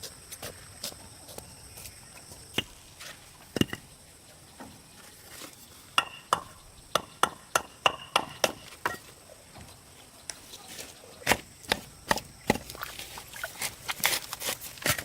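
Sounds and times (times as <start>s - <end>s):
tool striking wood: 6.0s - 9.0s.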